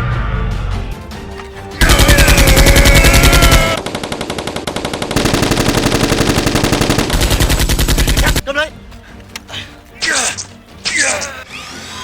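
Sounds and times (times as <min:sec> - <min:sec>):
machine-gun sound effect: 0:04.8 - 0:08.4.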